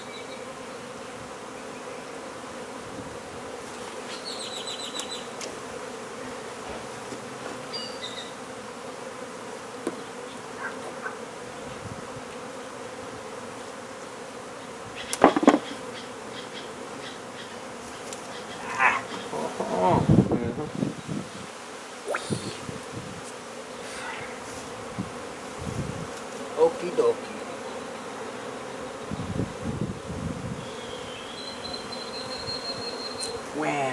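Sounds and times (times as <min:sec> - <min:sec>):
bees buzzing: 0:00.0 - 0:33.9
knocks and scrapes: 0:15.2 - 0:15.7.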